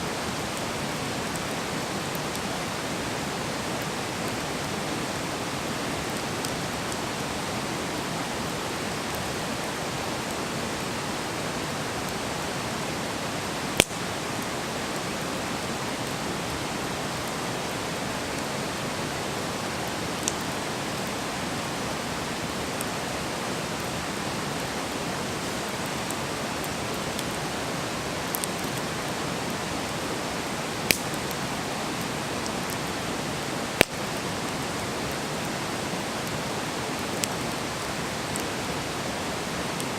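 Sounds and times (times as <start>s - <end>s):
campfire hissing: 0.0s - 39.9s
burning wood popping: 13.8s - 14.0s, 30.8s - 31.4s.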